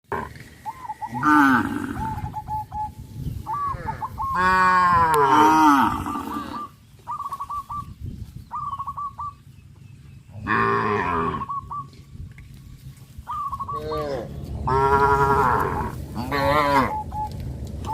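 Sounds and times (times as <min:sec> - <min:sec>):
cattle mooing: 0:01.1 - 0:02.2, 0:03.7 - 0:06.7, 0:10.4 - 0:11.6, 0:13.7 - 0:17.0.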